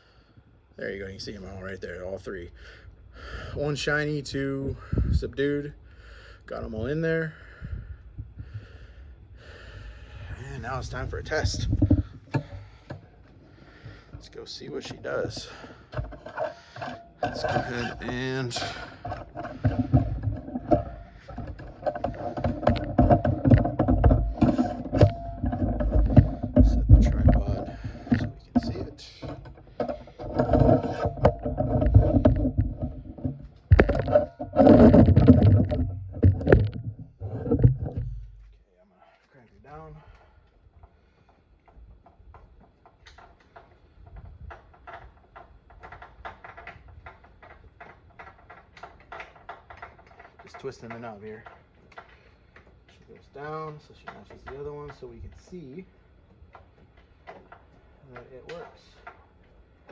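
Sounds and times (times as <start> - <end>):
small hard parts clicking: 7.6 - 38.6, 39.9 - 59.9.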